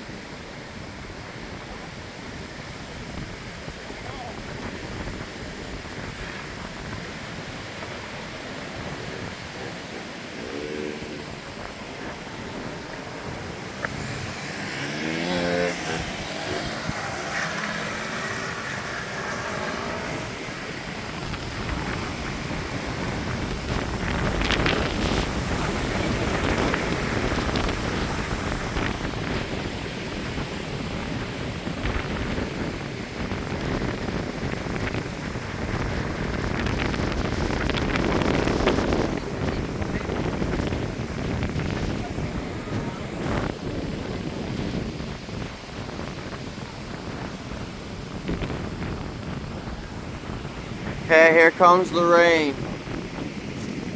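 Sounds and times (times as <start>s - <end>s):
strong wind on microphone: 0.0s - 53.9s
vehicle engine revving past: 9.5s - 23.5s.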